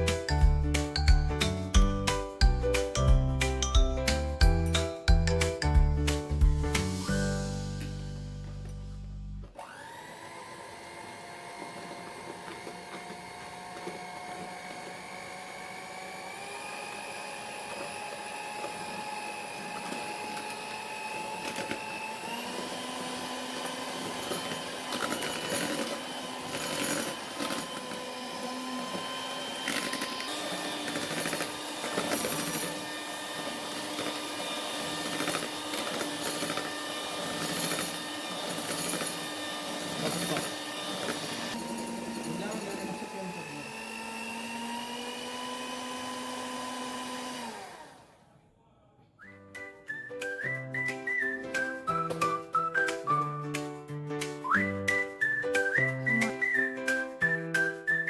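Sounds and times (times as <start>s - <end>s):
electric mixer whine: 9.4s - 48.2s.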